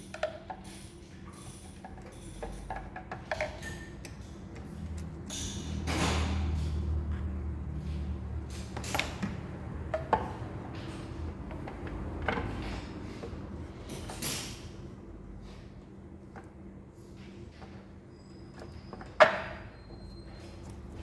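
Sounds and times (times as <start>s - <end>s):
tools and metal parts clicking: 0.1s - 6.9s.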